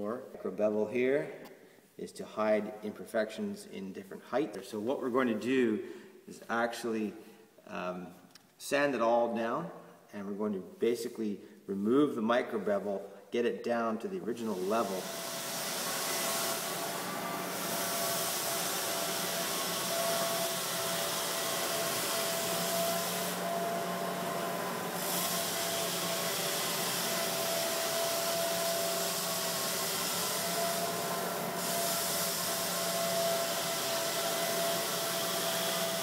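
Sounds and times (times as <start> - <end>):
electric floor sander running: 14.9 - 36.0.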